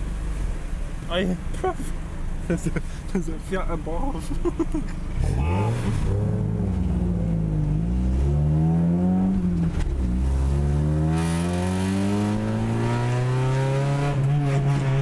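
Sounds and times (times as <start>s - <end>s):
car engine accelerating: 4.5s - 15.0s.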